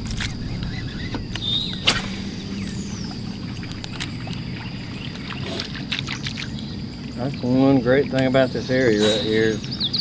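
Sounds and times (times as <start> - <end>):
boat motor humming: 0.0 - 7.5.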